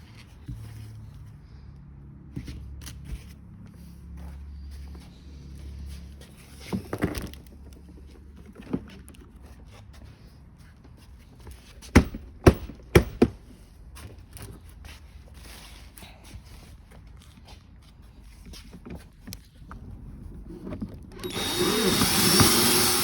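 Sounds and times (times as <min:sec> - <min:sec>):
sharp plastic knocks: 0:12.0 - 0:13.4.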